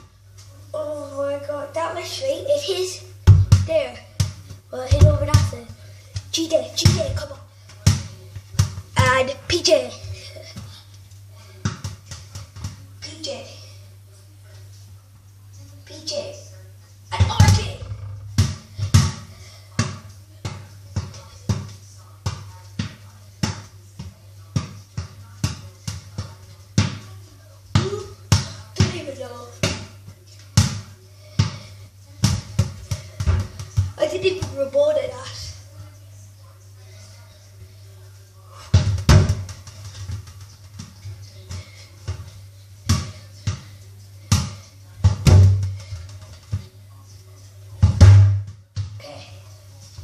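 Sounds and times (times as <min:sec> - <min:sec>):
ball bouncing on hard floor: 0:03.2 - 0:09.2, 0:11.6 - 0:12.8, 0:17.2 - 0:27.1, 0:27.7 - 0:30.0, 0:30.6 - 0:34.6, 0:38.7 - 0:43.7, 0:44.3 - 0:46.7, 0:47.8 - 0:49.1.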